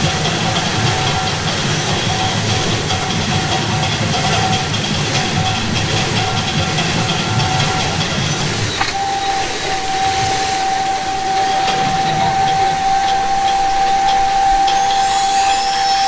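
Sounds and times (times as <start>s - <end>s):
fountain jets hissing: 0.0s - 16.0s
high held tone: 0.0s - 16.0s
rising whistle-like sweeps: 7.3s - 16.0s.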